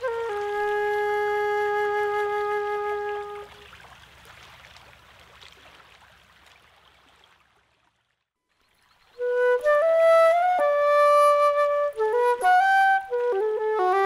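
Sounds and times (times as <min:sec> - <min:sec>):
flute music: 0:00.0 - 0:03.7, 0:09.1 - 0:14.0.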